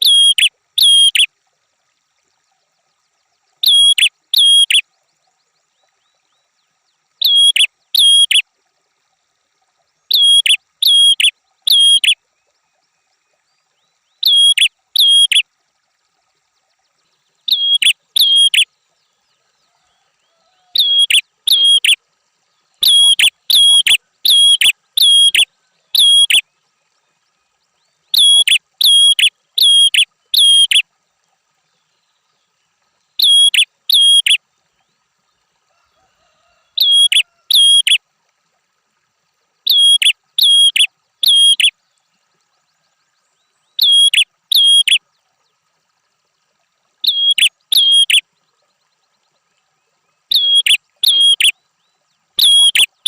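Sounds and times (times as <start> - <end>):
songbird calling sharp high notes: 0.0 - 1.3, 3.6 - 4.8, 7.2 - 8.4, 10.1 - 12.2, 14.2 - 15.4, 17.5 - 18.7, 20.8 - 22.0, 22.8 - 26.4, 28.2 - 30.8, 33.2 - 34.4, 36.8 - 38.0, 39.7 - 41.7, 43.8 - 45.0, 47.0 - 48.2, 50.3 - 51.5, 52.4 - 53.0.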